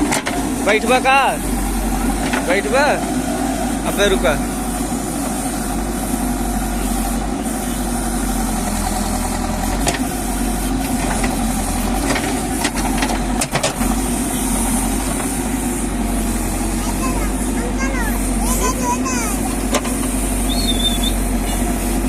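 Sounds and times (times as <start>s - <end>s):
knocks and clanks: 0.0s - 0.5s, 19.7s - 20.1s
diesel engine running: 0.0s - 22.0s.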